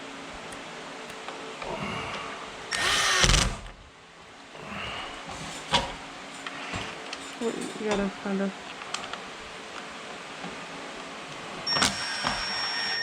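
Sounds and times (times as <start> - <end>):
power drill driving a screw: 2.7 - 3.6, 11.7 - 13.0.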